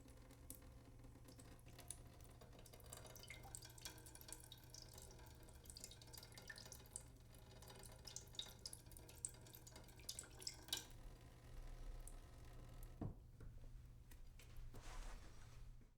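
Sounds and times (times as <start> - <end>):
water dripping: 0.3 - 11.0.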